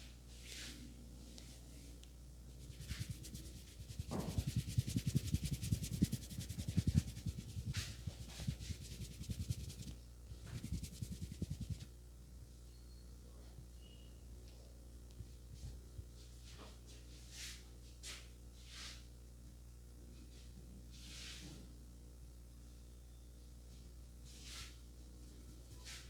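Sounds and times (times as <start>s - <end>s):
hands rubbing head: 2.6s - 11.9s
swishes of skin or hair: 2.6s - 11.9s.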